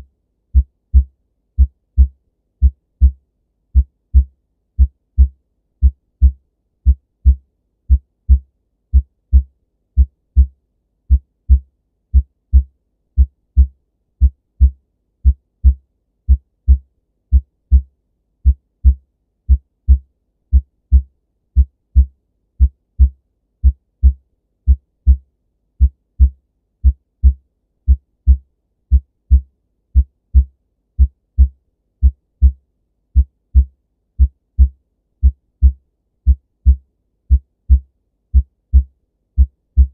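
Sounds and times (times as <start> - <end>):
heartbeat thuds: 0.6 - 3.2, 3.8 - 10.5, 11.1 - 21.0, 30.0 - 32.6, 33.2 - 39.9.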